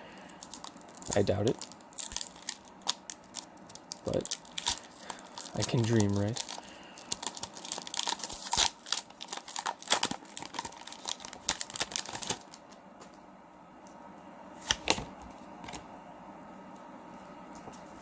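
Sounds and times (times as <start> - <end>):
foil wrapper crinkling: 0.0 - 12.8.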